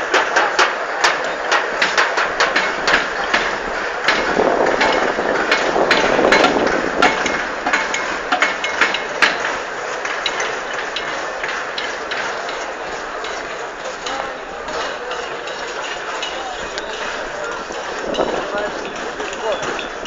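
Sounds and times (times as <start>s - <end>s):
crowd din: 0.0s - 20.0s
drums beating: 0.0s - 20.0s.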